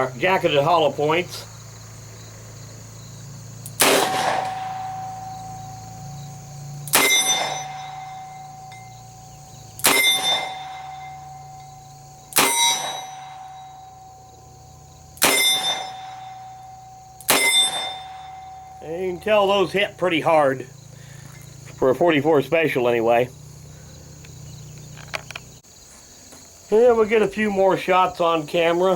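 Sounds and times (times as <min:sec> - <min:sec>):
revolver shots with ringing tail: 0:03.7 - 0:14.4, 0:15.0 - 0:19.3.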